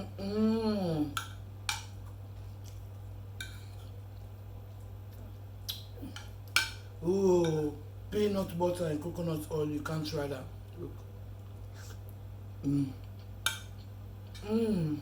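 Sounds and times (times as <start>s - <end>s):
person humming while eating: 0.0s - 1.2s, 12.6s - 13.1s, 14.3s - 15.0s
low electrical hum: 0.0s - 15.0s.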